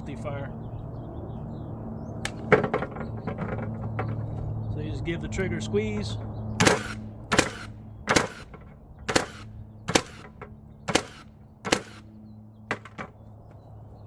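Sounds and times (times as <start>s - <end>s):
nail gun firing into wood: 2.3s - 4.1s, 6.6s - 12.0s, 12.7s - 13.1s.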